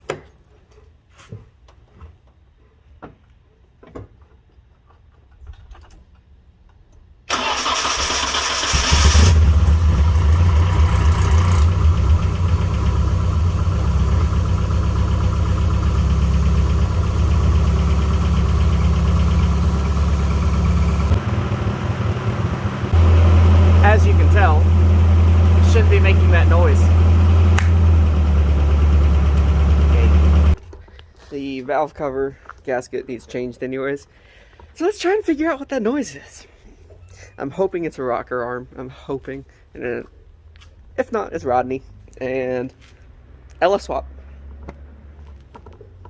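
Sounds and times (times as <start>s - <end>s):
starter cranking engine: 7.3s - 13.0s
car engine idling: 7.4s - 30.6s.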